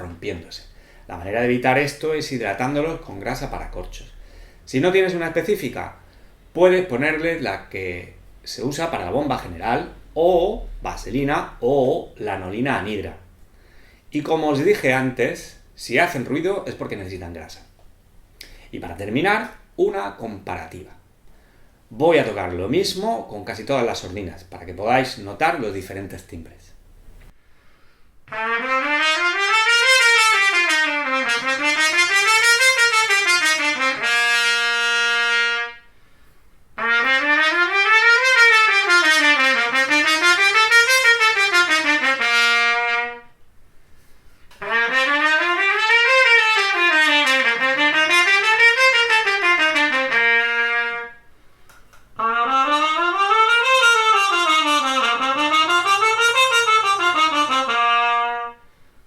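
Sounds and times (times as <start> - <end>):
muted trumpet playing scales: 0.0 - 7.8, 28.2 - 36.2, 36.8 - 43.4, 44.3 - 58.9.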